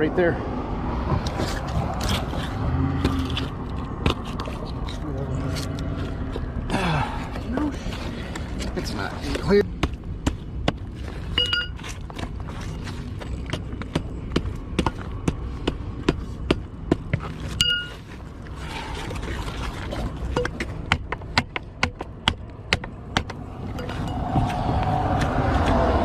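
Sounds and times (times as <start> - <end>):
short metallic ring: 11.4 - 11.8, 17.6 - 18.0.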